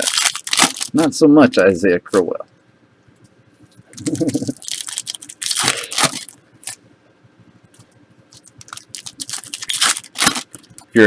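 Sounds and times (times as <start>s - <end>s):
foil wrappers crinkling: 0.0s - 1.0s, 3.9s - 6.8s, 8.3s - 11.0s
cards rustling: 3.9s - 6.8s.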